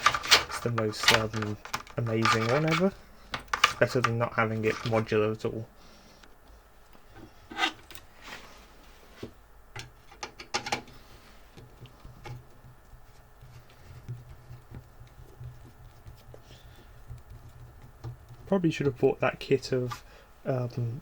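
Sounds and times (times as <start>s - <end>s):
hands rubbing and scraping: 0.0s - 5.2s, 10.9s - 20.8s.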